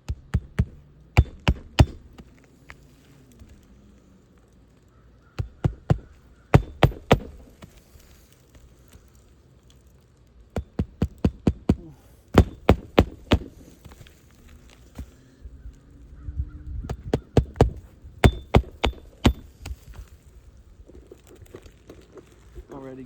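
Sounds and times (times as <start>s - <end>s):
hammer nailing shingle: 0.0s - 2.6s, 5.3s - 9.0s, 10.5s - 14.2s, 16.9s - 20.1s.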